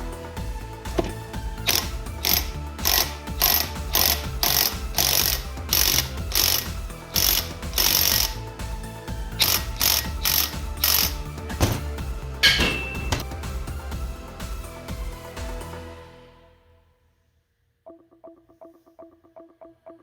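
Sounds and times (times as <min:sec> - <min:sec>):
ratchet wrench clicking: 0:01.0 - 0:08.4, 0:09.4 - 0:11.8.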